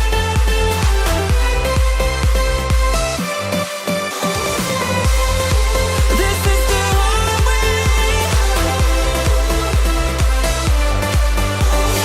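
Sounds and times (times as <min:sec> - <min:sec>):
kick drum beat: 0:00.0 - 0:03.2, 0:05.1 - 0:12.0.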